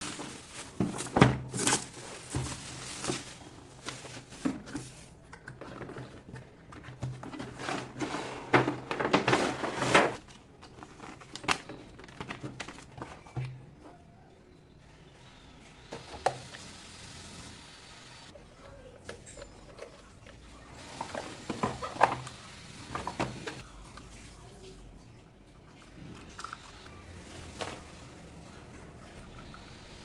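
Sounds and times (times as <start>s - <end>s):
cardboard and plastic crinkling: 0.0s - 13.5s.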